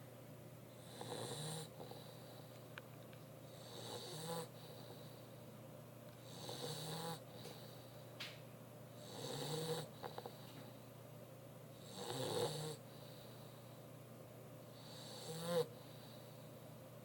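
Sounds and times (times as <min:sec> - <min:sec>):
dog snoring: 0:00.7 - 0:02.5, 0:03.5 - 0:05.3, 0:06.2 - 0:07.9, 0:09.0 - 0:10.7, 0:11.8 - 0:13.6, 0:14.7 - 0:16.5.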